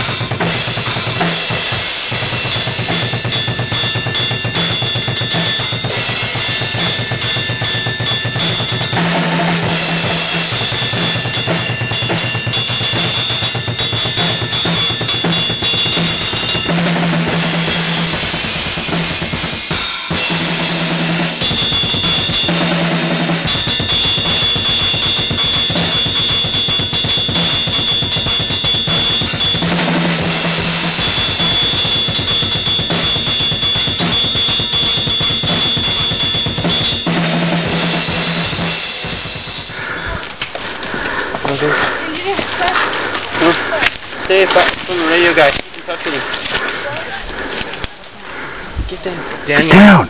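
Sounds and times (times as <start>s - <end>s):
drum kit beat: 0.0s - 50.0s
bass line: 49.6s - 50.0s.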